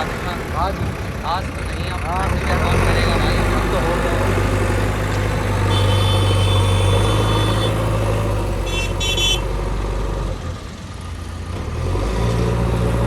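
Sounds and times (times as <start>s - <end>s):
heavy diesel engine running: 0.0s - 13.0s
horn tooting: 5.6s - 9.6s.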